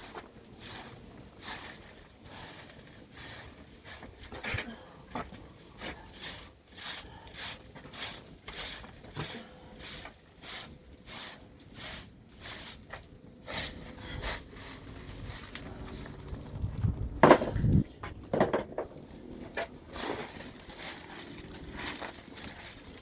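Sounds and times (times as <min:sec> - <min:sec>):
footsteps crunching through snow: 0:14.3 - 0:16.6.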